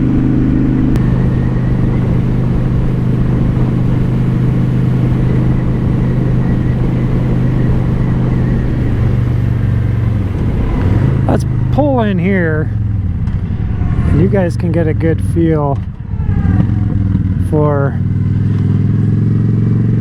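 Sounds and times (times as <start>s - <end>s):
motorcycle engine cruising: 0.0s - 20.0s.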